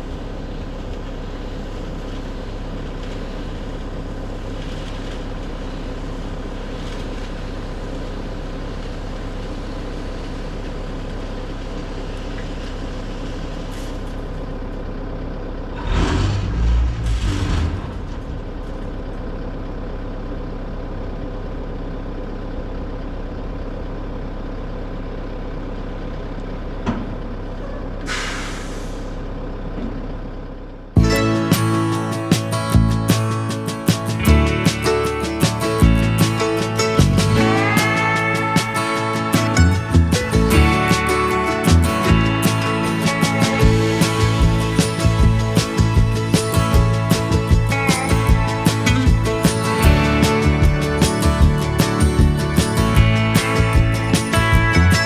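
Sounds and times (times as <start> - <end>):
diesel engine running: 0.0 - 55.0
loud rumbling burst: 15.7 - 19.5
air brake hiss: 28.0 - 29.3.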